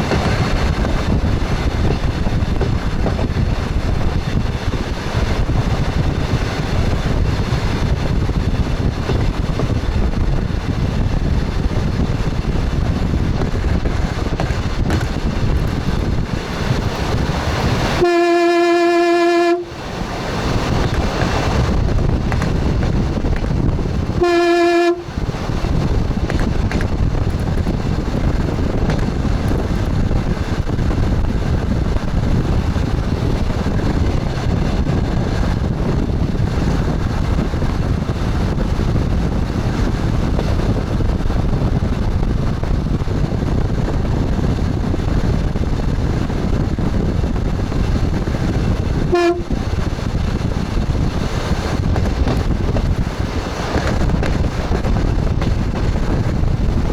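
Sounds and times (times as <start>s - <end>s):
train running rumble: 0.0s - 56.9s
train horn blast: 17.9s - 19.8s, 24.1s - 25.2s, 49.0s - 49.8s.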